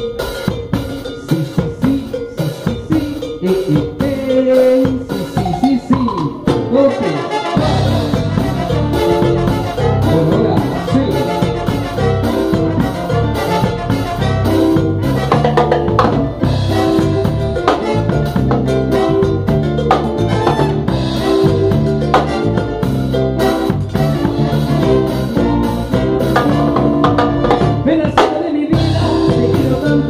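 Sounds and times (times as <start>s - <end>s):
drum kit and percussion: 0.0s - 30.0s
brass instruments: 6.4s - 30.0s.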